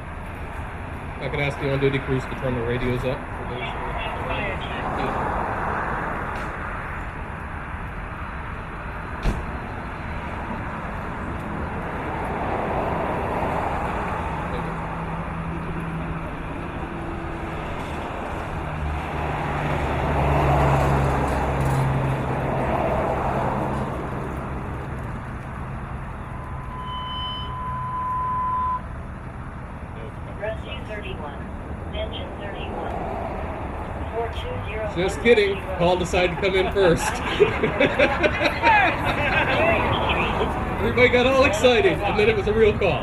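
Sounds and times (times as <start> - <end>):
engine hum: 0.0 - 43.0
radio alert beep: 26.6 - 28.8.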